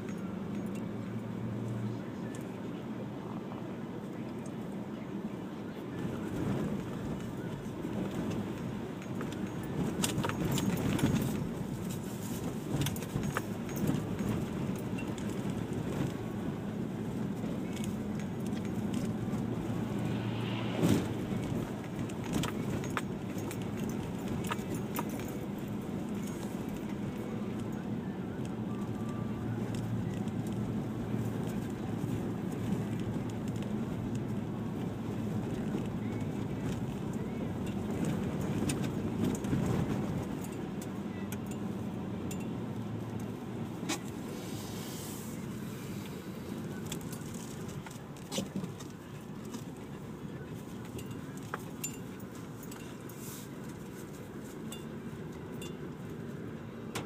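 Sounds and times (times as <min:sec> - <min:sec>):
vehicle rumble: 0:00.0 - 0:57.0
light clicks and rattles: 0:17.1 - 0:19.8.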